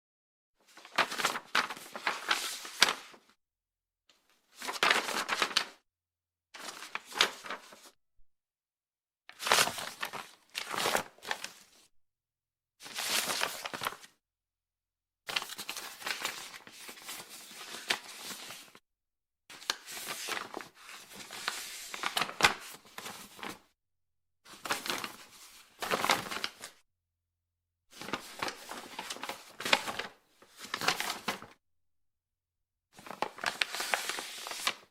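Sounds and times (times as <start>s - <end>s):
paper pages turning: 0.7s - 3.2s, 4.5s - 5.8s, 6.6s - 7.9s, 9.3s - 11.8s, 12.8s - 14.1s, 19.6s - 23.6s, 24.5s - 26.8s, 28.0s - 31.5s, 33.0s - 34.9s.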